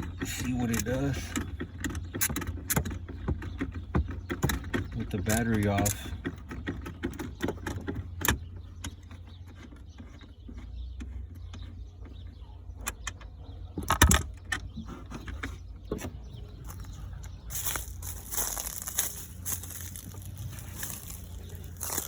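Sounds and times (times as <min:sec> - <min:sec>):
low steady rumble: 0:15.8 - 0:22.0
hand tools clicking and clinking: 0:16.6 - 0:22.0.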